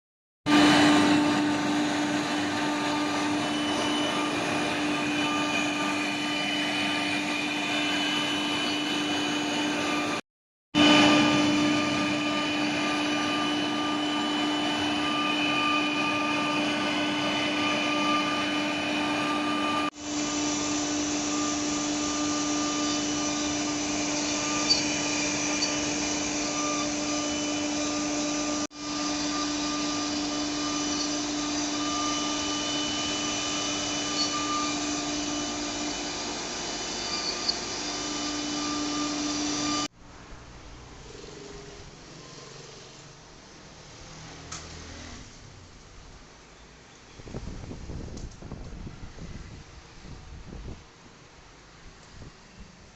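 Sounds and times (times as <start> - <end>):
cnc router whine: 0.5 - 10.2, 10.8 - 39.9.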